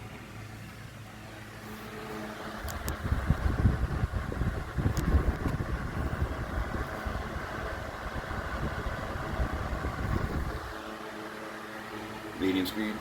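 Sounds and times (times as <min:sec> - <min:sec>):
fan whirring: 0:00.0 - 0:13.0
wind buffeting microphone: 0:02.7 - 0:10.8.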